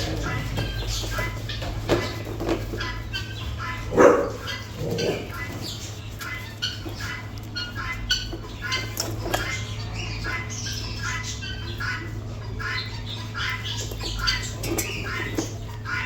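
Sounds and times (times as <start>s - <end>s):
low animal call: 0.0s - 1.4s, 3.6s - 5.6s
high chirps and squeaks: 0.0s - 16.0s.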